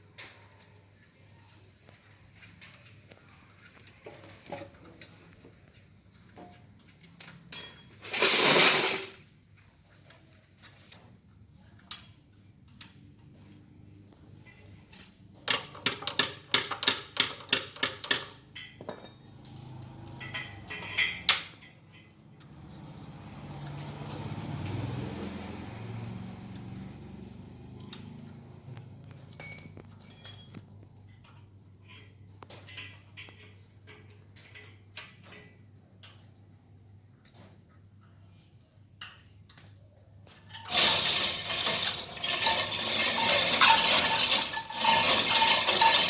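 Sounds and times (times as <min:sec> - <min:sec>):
metal tools clinking and knocking: 0:06.4 - 0:09.2, 0:14.5 - 0:22.2, 0:29.3 - 0:35.5, 0:39.0 - 0:46.0.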